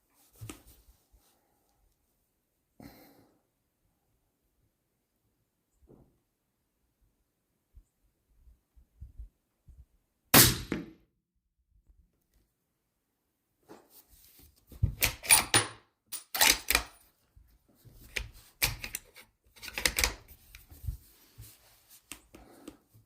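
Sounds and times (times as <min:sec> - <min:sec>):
rifle bolt clicks and clacks: 0:15.0 - 0:17.0, 0:18.1 - 0:20.3.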